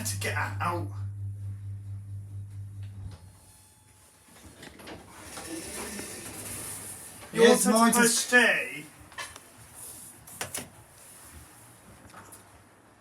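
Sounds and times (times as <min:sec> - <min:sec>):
lift drive hum: 0:00.0 - 0:03.4
lift doors sliding: 0:04.5 - 0:07.3.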